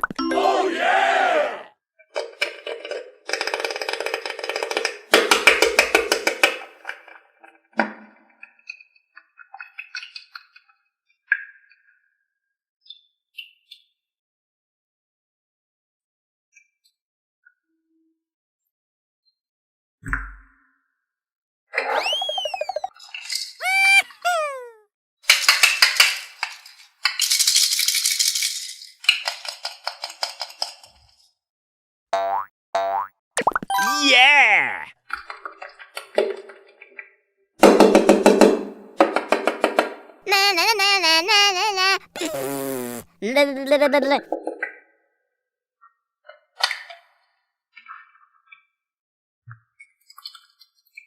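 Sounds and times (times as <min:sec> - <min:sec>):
falling cartoon tone: 0:00.0 - 0:01.7, 0:21.9 - 0:22.9, 0:23.6 - 0:24.8, 0:32.9 - 0:34.9, 0:40.3 - 0:44.2.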